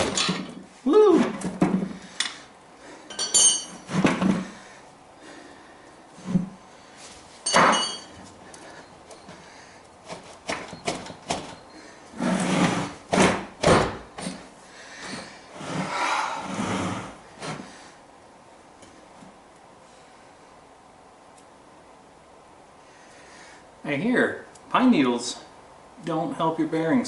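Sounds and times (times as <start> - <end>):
metal clank ringing: 3.1 - 3.9, 7.4 - 8.2
scraping and rubbing: 12.2 - 13.4.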